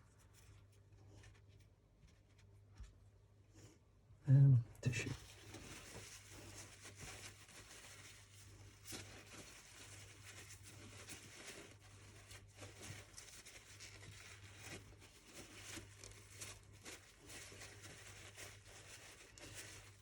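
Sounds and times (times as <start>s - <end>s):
hands rustling tissue and parts: 0.0s - 4.0s, 4.8s - 20.0s.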